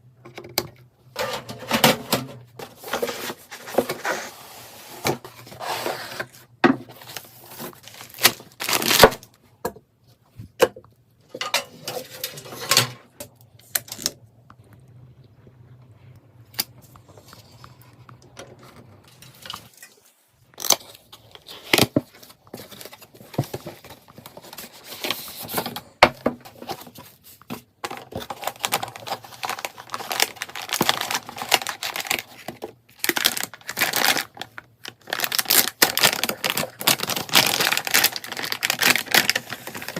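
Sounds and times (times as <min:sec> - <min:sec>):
wrapping crinkling and tearing: 0:02.6 - 0:09.4, 0:20.5 - 0:25.8, 0:26.4 - 0:39.9.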